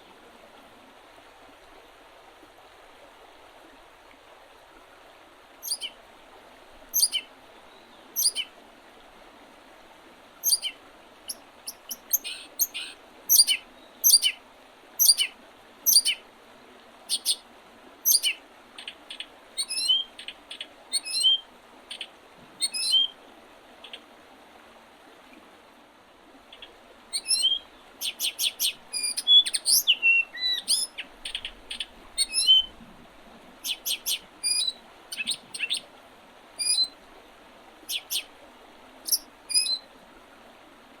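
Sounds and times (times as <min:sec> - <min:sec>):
river rushing: 0:00.0 - 0:41.0
songbirds chirping and trilling: 0:05.6 - 0:05.9, 0:07.0 - 0:08.5, 0:10.4 - 0:14.4, 0:15.0 - 0:15.3, 0:26.5 - 0:32.7, 0:33.6 - 0:35.9, 0:37.9 - 0:38.3, 0:39.1 - 0:39.8.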